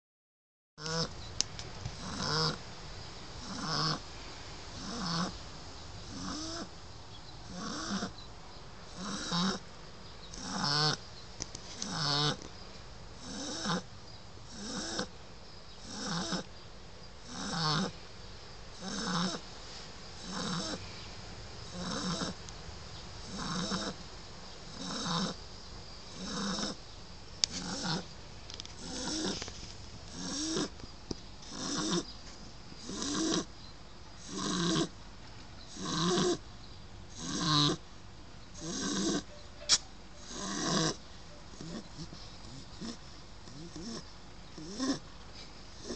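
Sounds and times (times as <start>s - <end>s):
puppy snoring: 0.8s - 1.2s, 1.9s - 2.6s, 3.4s - 4.1s, 4.7s - 5.4s, 6.0s - 6.8s, 7.4s - 8.3s, 8.9s - 9.7s, 10.3s - 11.0s, 11.8s - 12.5s, 13.2s - 15.1s, 15.8s - 16.5s, 17.2s - 18.0s, 18.7s - 19.4s, 20.2s - 20.9s, 21.6s - 22.4s, 23.2s - 24.0s, 24.7s - 25.4s, 26.1s - 26.8s, 27.4s - 30.8s, 31.4s - 32.1s, 32.8s - 33.6s, 34.2s - 35.0s, 35.6s - 36.4s, 37.1s - 37.9s, 38.5s - 45.1s, 45.7s - 45.9s.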